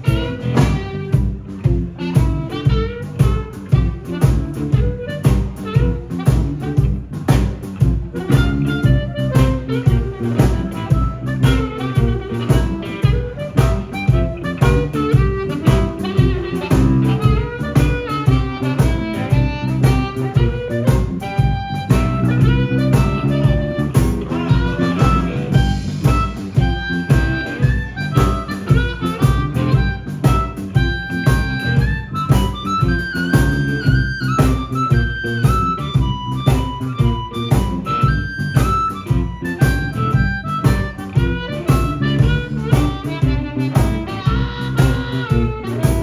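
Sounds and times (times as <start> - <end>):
blues band playing: 0.0 - 46.0
harmonica bent notes: 0.0 - 46.0.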